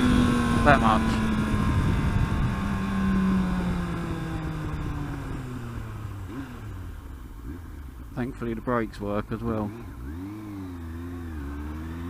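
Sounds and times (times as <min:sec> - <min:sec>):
wind on microphone: 0:00.0 - 0:05.5.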